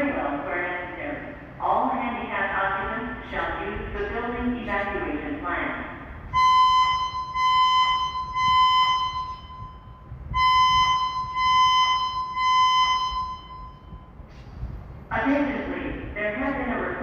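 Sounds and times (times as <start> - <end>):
pulsing high-pitched emergency alarm: 6.3 - 14.2.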